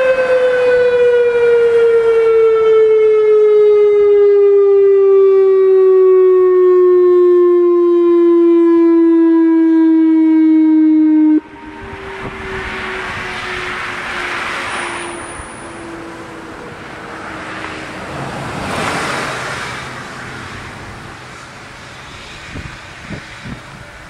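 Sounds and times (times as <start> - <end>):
warning siren tone: 0.0 - 23.6.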